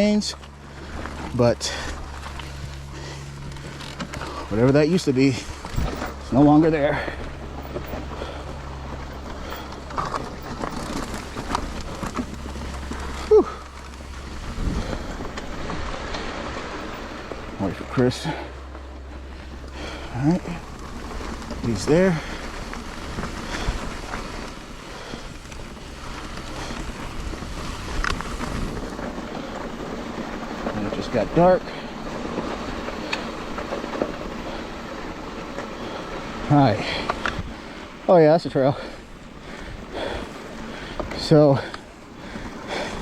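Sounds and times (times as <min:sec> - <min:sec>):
bike clicks and rattles: 0:00.0 - 0:43.0
steady low rumble: 0:00.0 - 0:43.0
wind buffeting microphone: 0:01.5 - 0:38.1
wind on microphone: 0:11.1 - 0:17.6.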